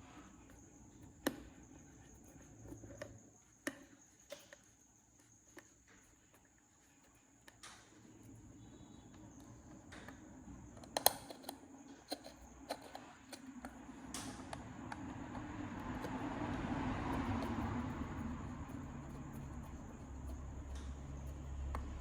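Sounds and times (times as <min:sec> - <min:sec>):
steady low hum: 0:04.9 - 0:22.0
rough mechanical rumble: 0:14.7 - 0:22.0.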